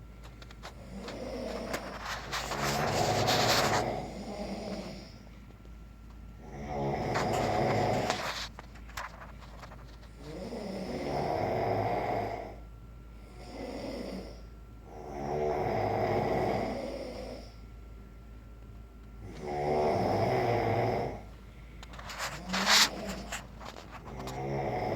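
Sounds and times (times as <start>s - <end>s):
person snoring: 0.7s - 5.1s, 6.4s - 8.4s, 10.2s - 12.6s, 13.3s - 17.5s, 19.2s - 21.3s, 22.1s - 24.9s.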